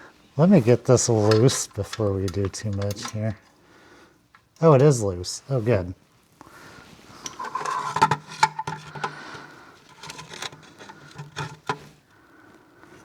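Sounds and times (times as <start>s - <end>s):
hand tools clinking on metal: 1.0s - 3.6s, 7.2s - 12.0s.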